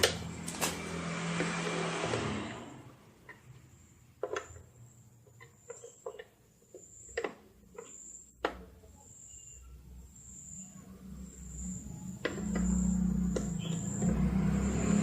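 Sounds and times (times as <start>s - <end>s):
cricket chirping: 4.8s - 15.0s.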